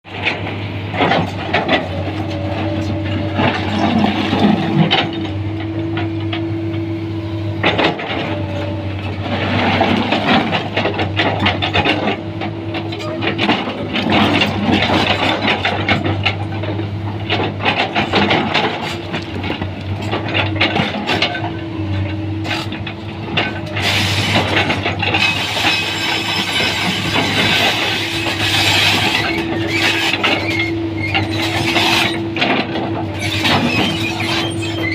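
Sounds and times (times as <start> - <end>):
excavator diesel engine running: 0.1 - 34.9
metallic clanks and knocks: 7.5 - 34.9.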